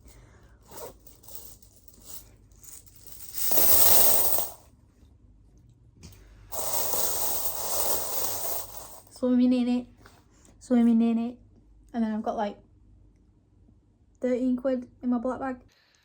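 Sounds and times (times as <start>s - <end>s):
cash rustling and shuffling: 0.7s - 4.6s, 6.6s - 9.1s.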